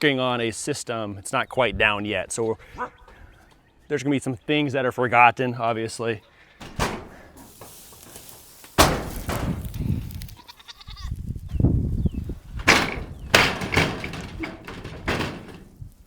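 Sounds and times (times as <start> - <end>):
goats bleating: 10.2 - 11.2.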